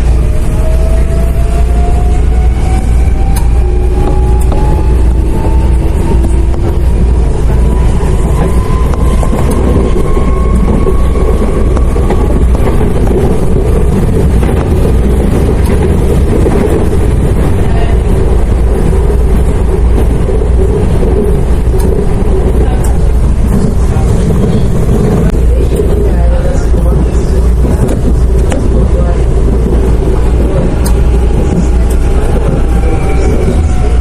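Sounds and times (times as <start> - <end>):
train rumbling on rails: 0.0 - 34.0.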